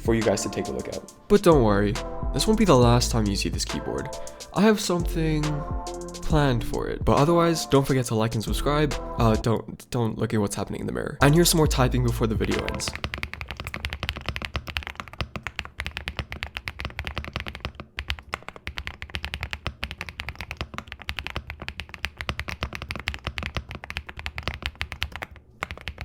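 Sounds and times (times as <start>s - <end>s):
mechanical keyboard typing: 12.5s - 26.0s.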